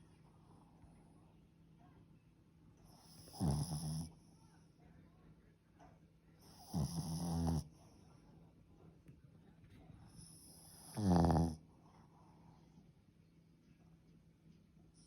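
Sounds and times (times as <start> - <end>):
dog snoring: 2.9 - 4.2, 6.4 - 7.7, 10.1 - 11.6.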